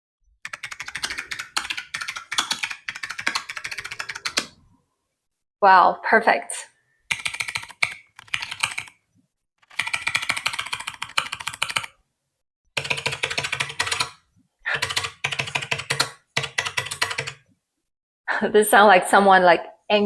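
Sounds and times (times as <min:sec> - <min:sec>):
fast keyboard typing: 0:00.4 - 0:04.6, 0:07.1 - 0:09.0, 0:09.6 - 0:12.0, 0:12.8 - 0:17.4.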